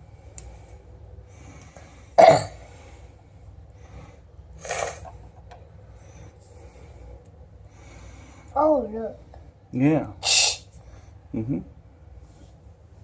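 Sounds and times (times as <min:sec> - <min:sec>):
person coughing: 0:02.2 - 0:02.6.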